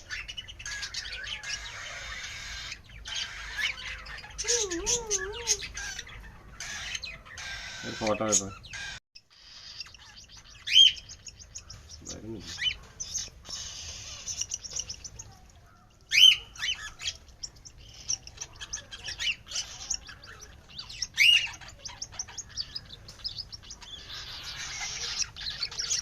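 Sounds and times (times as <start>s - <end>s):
birds chirping and twittering: 0.0s - 26.0s
loud bird calls: 0.0s - 26.0s.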